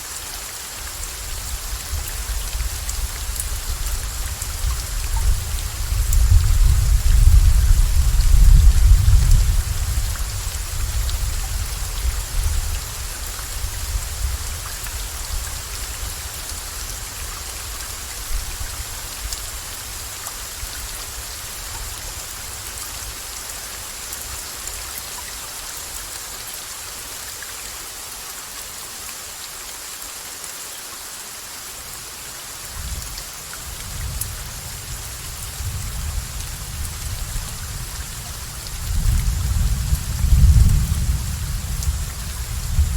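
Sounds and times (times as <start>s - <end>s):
steady rain hissing: 0.0s - 42.9s
rolling thunder rumble: 5.2s - 11.3s, 35.6s - 42.9s.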